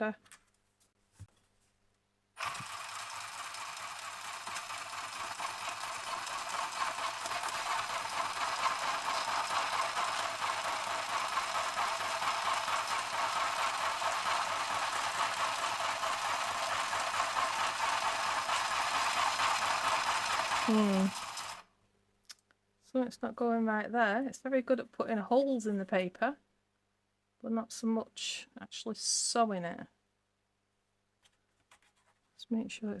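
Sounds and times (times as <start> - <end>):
electric sewing machine running: 2.4 - 21.6.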